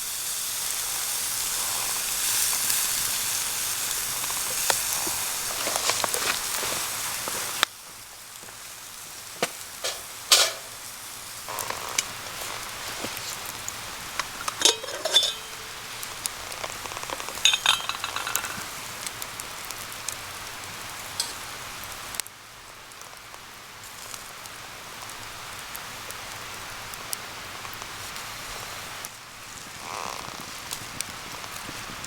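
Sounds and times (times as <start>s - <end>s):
sizzling hiss of campfire cooking: 0.0s - 32.0s
metal utensils clinking: 9.8s - 10.8s, 14.1s - 18.9s.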